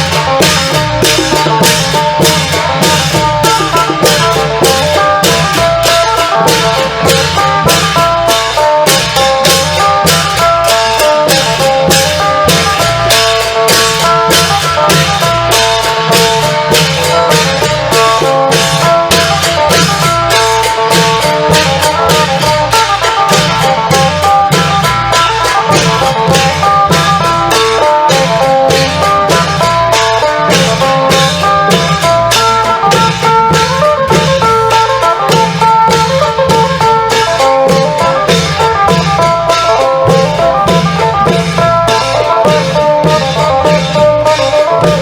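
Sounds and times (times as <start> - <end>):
drums and percussion beat: 0.0 - 45.0.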